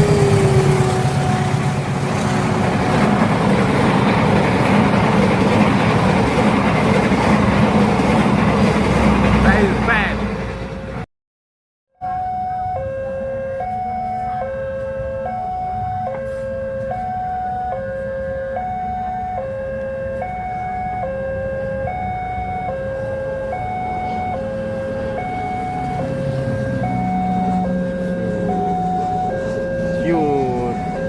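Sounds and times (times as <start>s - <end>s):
steady low rumble: 0.0s - 11.0s
two-tone electronic warning signal: 12.0s - 31.0s.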